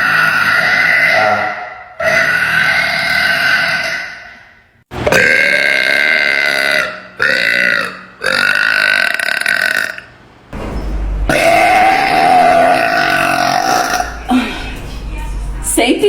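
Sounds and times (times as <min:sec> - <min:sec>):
woman belching loudly: 0:05.1 - 0:10.1, 0:11.4 - 0:14.5
brief low rumble: 0:10.6 - 0:15.8.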